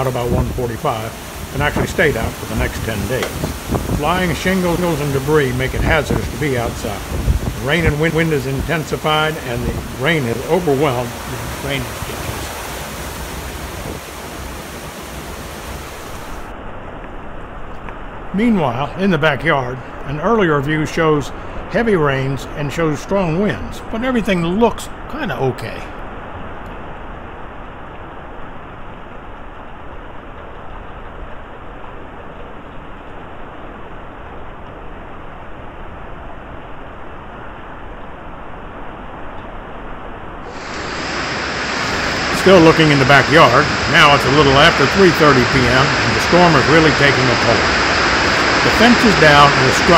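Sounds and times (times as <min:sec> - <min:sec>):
high wind rushing: 0:00.0 - 0:16.6, 0:40.4 - 0:49.9
heavy rain: 0:00.0 - 0:24.7, 0:25.3 - 0:49.9.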